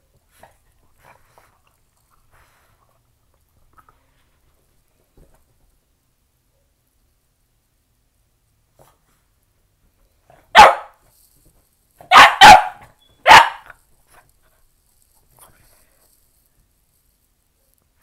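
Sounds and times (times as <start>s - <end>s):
dog barking: 10.5s - 11.0s, 12.0s - 13.7s.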